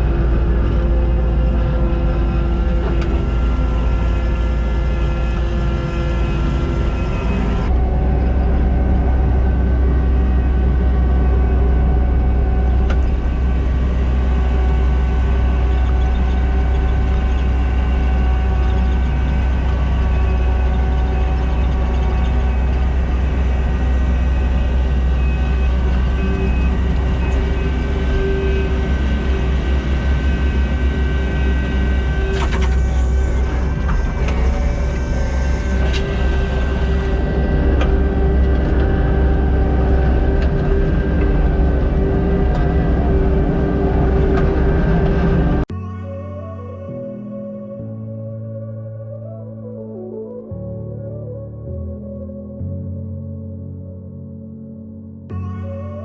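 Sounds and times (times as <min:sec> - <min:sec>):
diesel engine running under load: 0:00.0 - 0:45.7.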